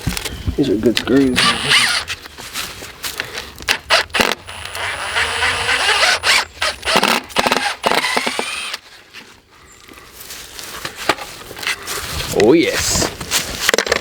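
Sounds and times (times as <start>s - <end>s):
power drill running: 1.3s - 2.1s, 3.7s - 8.8s.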